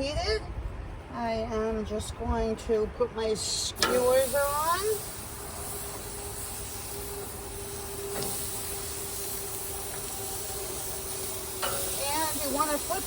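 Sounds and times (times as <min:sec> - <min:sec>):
kebabs sizzling on grill: 0:03.7 - 0:13.0.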